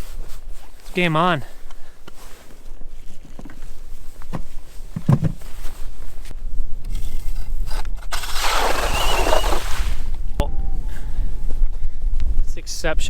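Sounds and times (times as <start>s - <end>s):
scraping rush: 8.2s - 10.1s
wind buffeting microphone: 8.9s - 13.0s.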